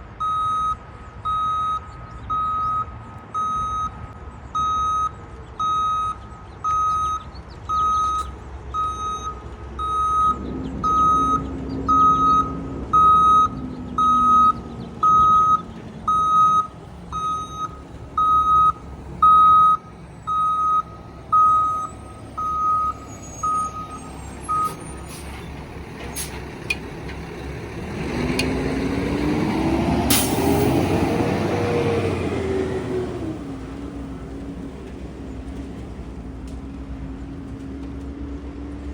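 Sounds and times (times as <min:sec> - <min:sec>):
reversing alarm beeping: 0:00.2 - 0:25.3
diesel engine running: 0:04.6 - 0:38.9.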